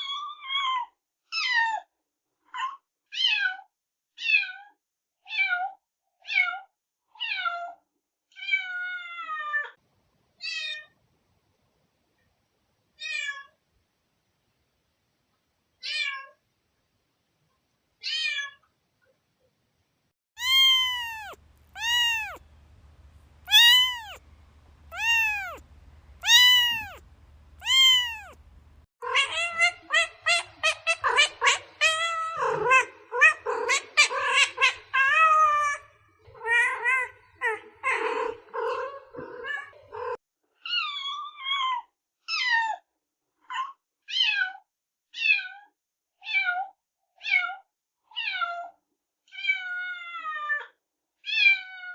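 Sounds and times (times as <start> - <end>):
cat meowing: 20.4 - 30.1.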